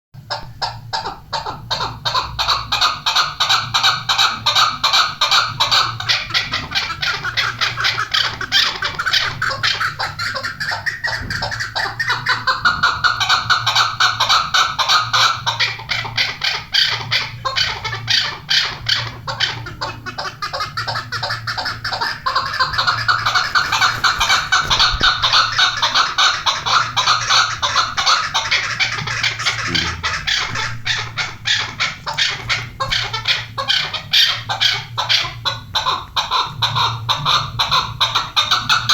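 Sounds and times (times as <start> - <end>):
partridges clucking: 19.0 - 35.0.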